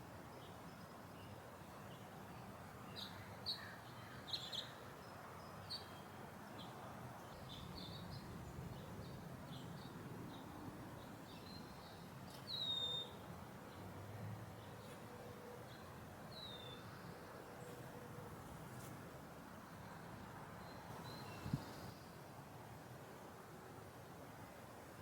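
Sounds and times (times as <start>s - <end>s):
small birds chirping: 6.6s - 13.8s.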